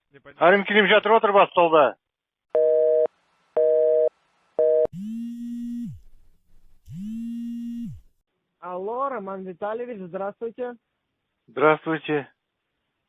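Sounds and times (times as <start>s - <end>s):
telephone busy tone beeps: 2.6s - 5.0s
telephone ringing tones: 2.6s - 6.0s.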